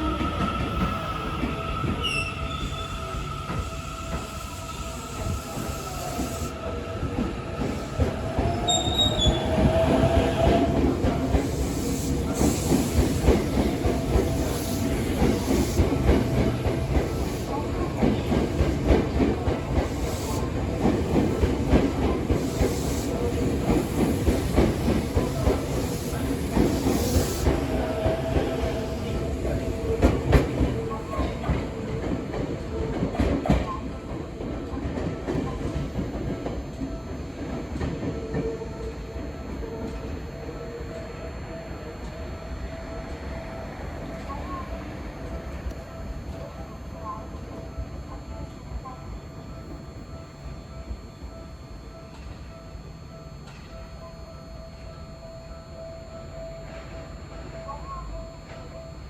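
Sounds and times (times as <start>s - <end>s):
train running gear rumbling: 0.0s - 40.1s.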